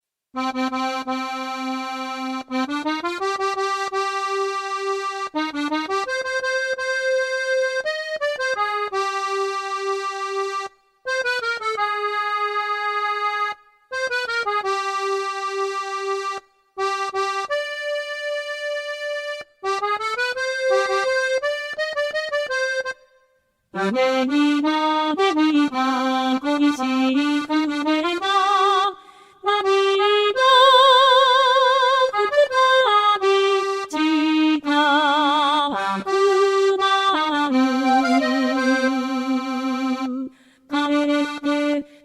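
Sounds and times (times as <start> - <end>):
accordion melody: 0.4 - 42.0.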